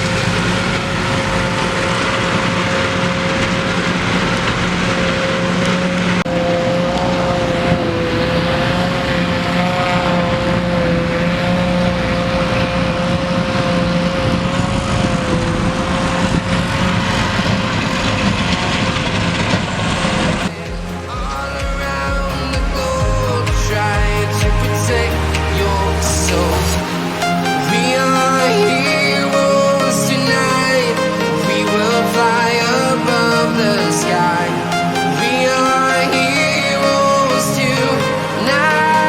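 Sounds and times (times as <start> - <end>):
machinery whine: 0.0 - 39.0.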